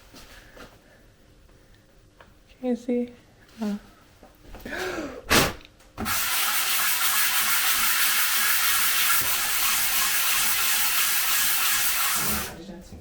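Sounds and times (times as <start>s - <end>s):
compressed air hissing: 6.0s - 12.6s.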